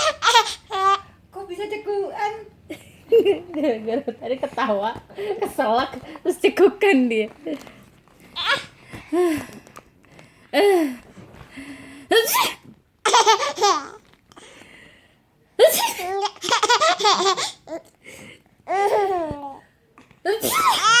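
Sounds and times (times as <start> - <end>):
baby laughing: 0.0 - 1.1, 8.4 - 8.7, 13.0 - 14.0, 15.6 - 17.9, 20.4 - 21.0.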